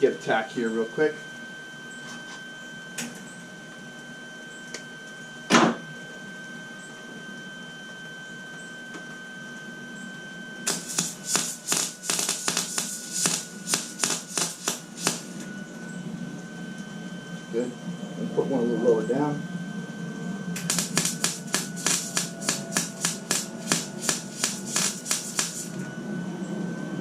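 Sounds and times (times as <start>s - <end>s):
sharp click: 10.7s - 15.5s, 20.6s - 25.8s
welding arc crackling: 10.7s - 15.5s, 20.6s - 25.8s
steady high tone: 10.7s - 15.6s, 20.6s - 26.4s.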